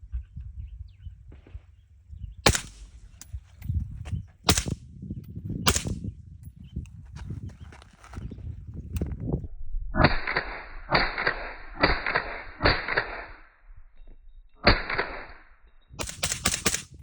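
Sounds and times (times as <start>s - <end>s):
suppressed rifle shots: 2.4s - 3.3s, 4.5s - 4.8s, 5.7s - 6.0s, 10.0s - 13.4s, 14.6s - 15.4s, 16.0s - 17.0s.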